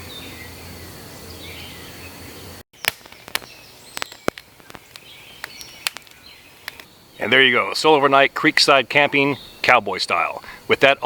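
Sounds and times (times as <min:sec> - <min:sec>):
sharp clicks and ticks: 0:02.8 - 0:06.9.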